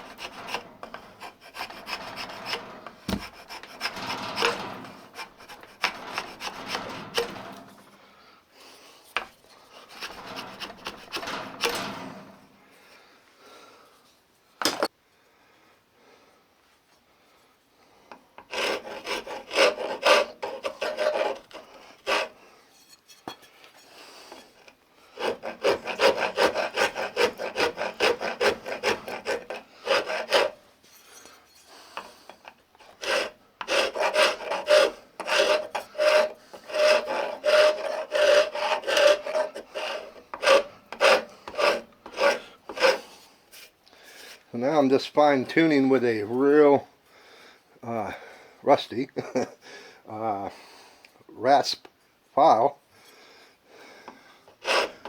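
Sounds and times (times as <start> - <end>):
hand file rasping wood: 0.0 - 7.9, 9.2 - 12.0, 18.4 - 22.4, 24.3 - 30.6, 31.9 - 43.2, 54.1 - 55.0.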